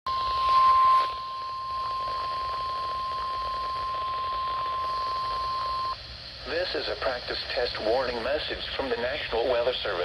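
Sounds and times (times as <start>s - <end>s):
steady warning alarm tone: 0.1s - 6.0s
radio hiss: 0.1s - 10.0s.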